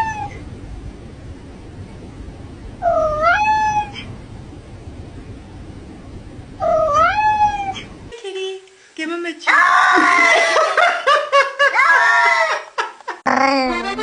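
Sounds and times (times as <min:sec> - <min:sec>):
cat meowing: 0:00.0 - 0:00.4, 0:02.8 - 0:04.1, 0:06.6 - 0:07.9, 0:13.3 - 0:14.0
low background rumble: 0:00.0 - 0:08.2.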